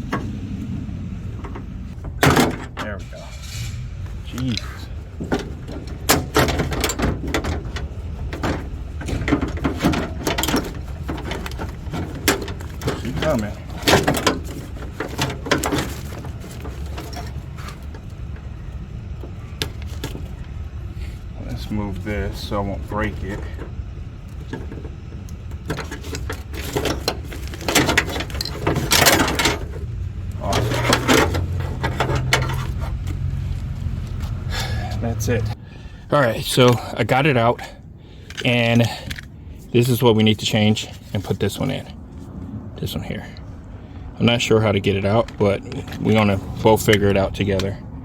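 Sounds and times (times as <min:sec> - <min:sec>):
plastic and metal clattering: 0:00.0 - 0:34.6, 0:38.1 - 0:39.8
steady low hum: 0:00.0 - 0:48.0
metal and plastic parts clicking: 0:04.3 - 0:20.6, 0:23.0 - 0:33.3, 0:38.2 - 0:39.3.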